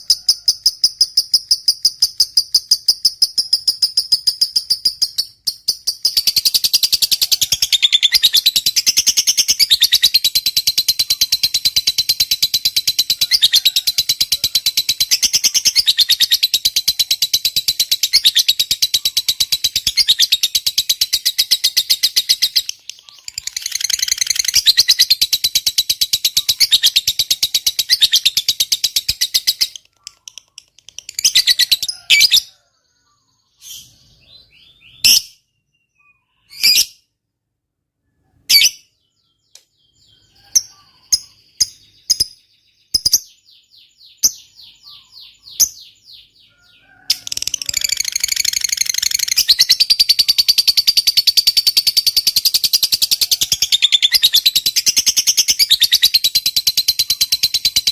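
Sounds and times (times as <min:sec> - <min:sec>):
bird chirps and squeaks: 0:00.0 - 0:32.5, 0:33.6 - 0:37.0, 0:44.2 - 0:57.9
lovebird rapid chatter: 0:00.0 - 0:32.5, 0:47.1 - 0:57.9.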